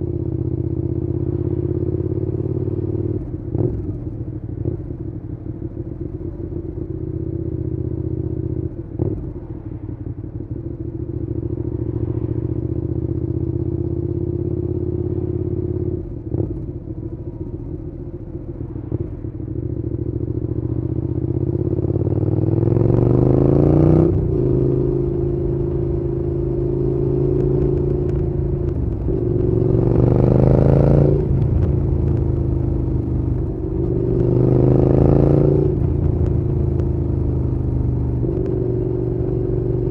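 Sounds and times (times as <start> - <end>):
motorcycle engine accelerating: 10.5 - 39.9.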